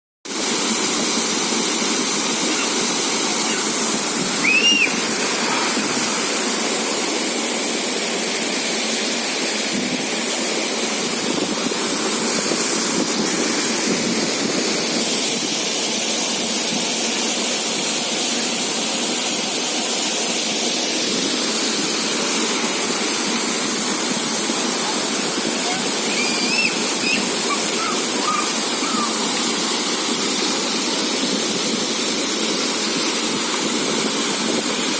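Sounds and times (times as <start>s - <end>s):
waterfall roaring: 0.3s - 34.9s
short high chirp: 4.4s - 5.0s, 26.1s - 29.1s.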